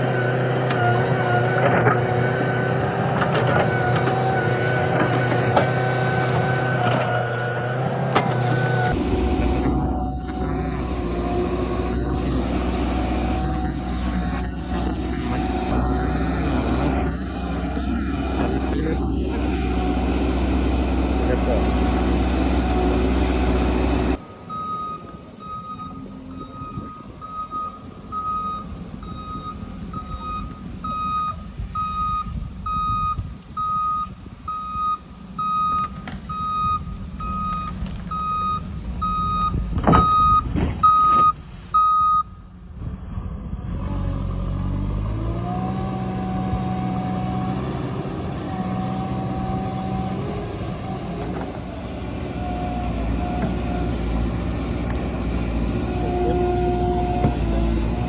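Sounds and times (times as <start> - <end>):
diesel engine running: 0.0 - 58.0
reversing alarm beeping: 24.5 - 42.4.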